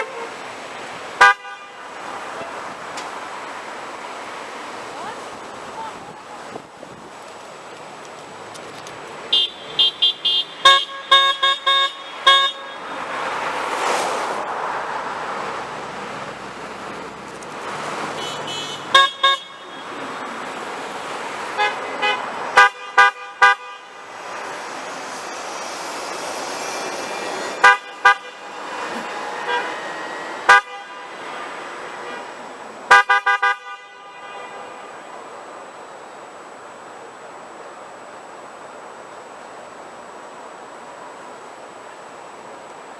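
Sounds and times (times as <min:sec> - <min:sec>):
car horns honking: 0:00.0 - 0:00.4, 0:01.1 - 0:02.6, 0:09.3 - 0:13.6, 0:18.1 - 0:20.4, 0:21.4 - 0:24.4, 0:27.1 - 0:35.2
passing cars: 0:00.0 - 0:42.9.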